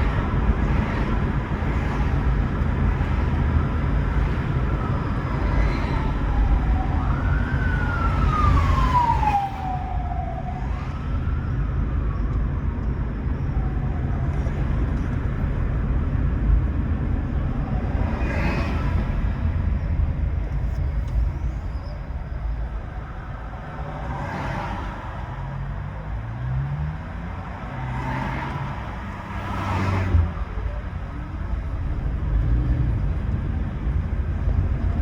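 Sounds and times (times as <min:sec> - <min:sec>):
car road and tyre noise: 0:00.0 - 0:35.0
emergency siren wailing: 0:02.9 - 0:15.2, 0:22.0 - 0:31.0.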